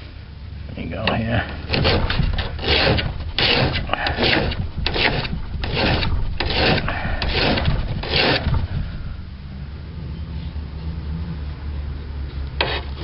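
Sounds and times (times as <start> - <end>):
hand file rasping on steel blade: 1.7 - 8.7, 12.6 - 13.0.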